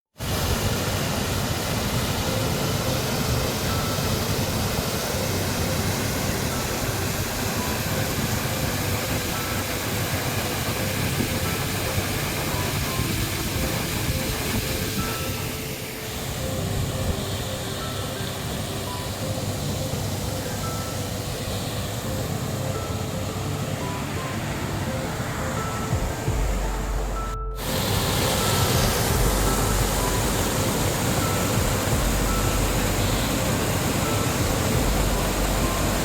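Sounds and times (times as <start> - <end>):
waterfall rushing: 0.2 - 36.0.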